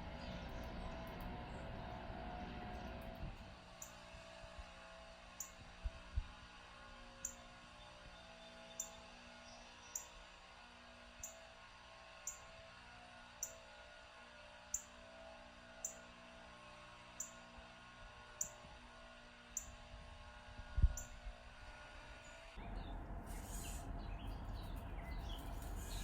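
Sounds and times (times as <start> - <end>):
faint steady hum: 0.0 - 26.0
small bird chirping: 22.7 - 26.0.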